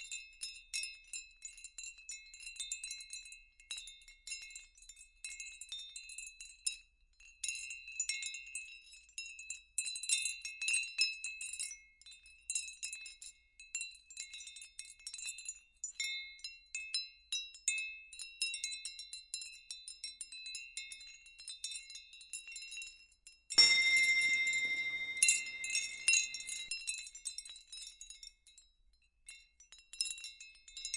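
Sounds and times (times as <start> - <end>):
chimes tinkling: 23.6 - 26.8.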